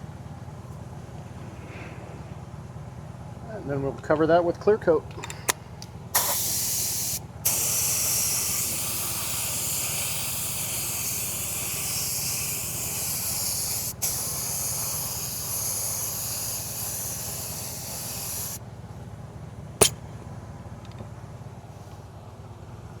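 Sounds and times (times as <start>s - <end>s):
spray paint hissing: 6.2s - 18.6s.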